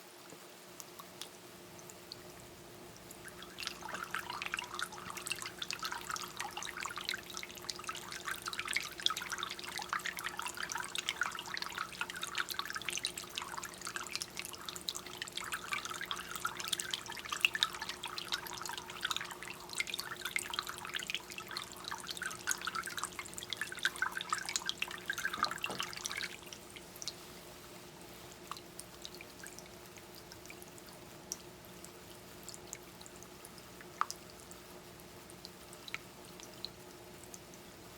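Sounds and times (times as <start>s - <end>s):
fountain water trickling over stone: 3.2s - 27.2s.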